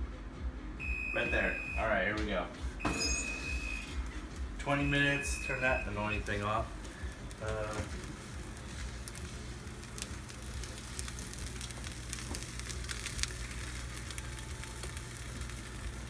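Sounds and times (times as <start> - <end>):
food sizzling in baking dish: 4.6 - 16.0.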